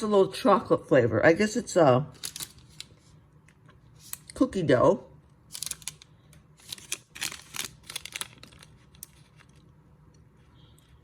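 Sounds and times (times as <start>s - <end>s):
plastic packaging crinkling: 2.2s - 3.0s, 5.5s - 9.7s.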